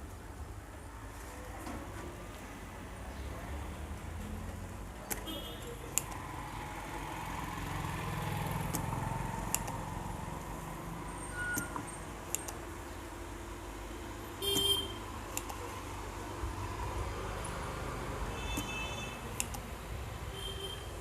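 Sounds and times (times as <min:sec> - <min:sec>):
traffic rumble: 0:00.0 - 0:21.0
sharp clicks: 0:05.9 - 0:06.2, 0:08.6 - 0:09.9, 0:11.5 - 0:12.6, 0:15.3 - 0:15.6, 0:18.5 - 0:19.7
vehicle horn toot: 0:14.4 - 0:15.0, 0:18.3 - 0:19.2, 0:20.3 - 0:20.9.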